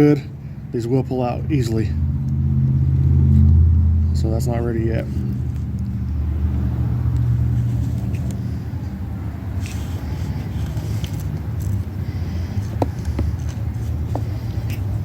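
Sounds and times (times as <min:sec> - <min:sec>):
low mechanical drone: 0:00.0 - 0:15.0.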